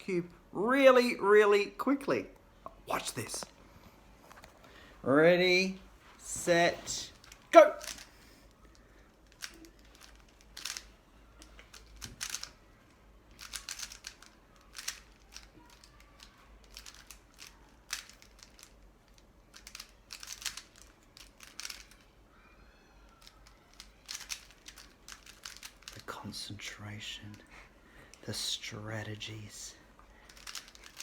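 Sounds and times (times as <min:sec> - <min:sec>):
puzzle cube plastic clicks: 0:07.2 - 0:12.6, 0:13.3 - 0:22.0, 0:23.2 - 0:26.0, 0:30.2 - 0:31.0.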